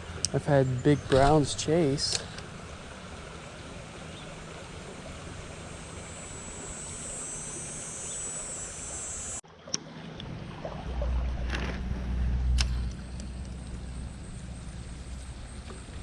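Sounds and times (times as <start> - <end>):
creek water running: 0.0 - 16.0.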